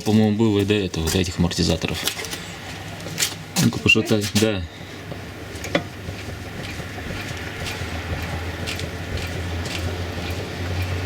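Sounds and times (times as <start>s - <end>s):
faint suspension ticks: 0.0s - 11.0s
steady low hum: 0.0s - 11.0s.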